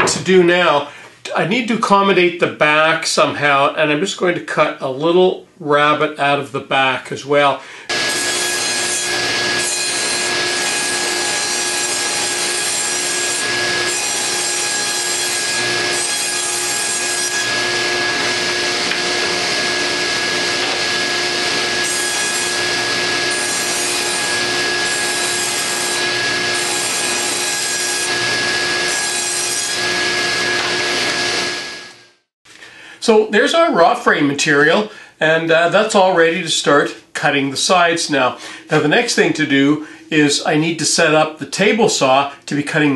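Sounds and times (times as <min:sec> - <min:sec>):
table saw motor whine: 0:07.9 - 0:32.2.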